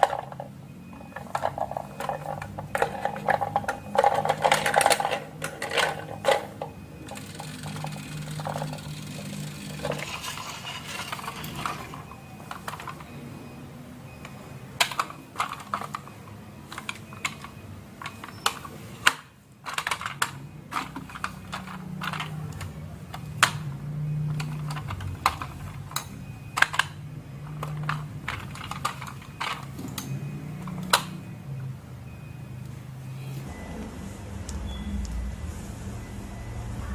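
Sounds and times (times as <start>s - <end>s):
marbles rolling on wooden track: 7.1s - 12.1s.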